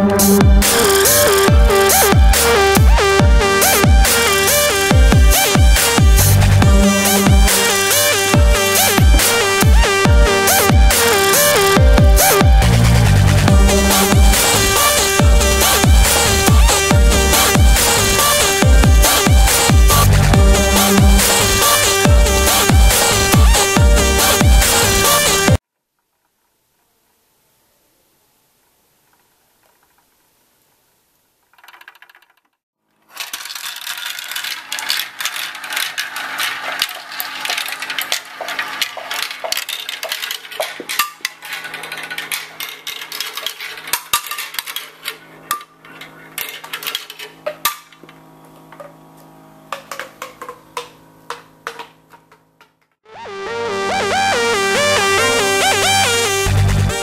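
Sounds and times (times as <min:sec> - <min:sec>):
marbles clattering down marble run: 0:31.5 - 0:48.1.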